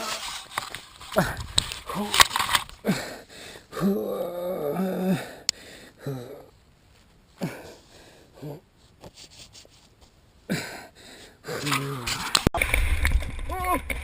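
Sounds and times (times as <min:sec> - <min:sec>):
person gasping for breath: 0:02.8 - 0:06.5, 0:07.4 - 0:08.6, 0:10.5 - 0:12.4
person groaning: 0:03.7 - 0:05.4, 0:06.0 - 0:06.5, 0:11.4 - 0:12.4.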